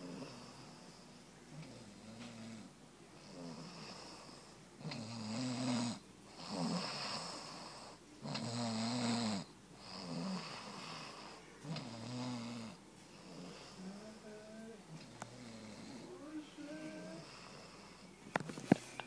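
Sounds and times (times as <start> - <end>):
soft breaths: 0.0 - 5.2, 6.2 - 8.5, 9.4 - 19.0
rattling snores: 1.5 - 14.0, 14.9 - 16.1.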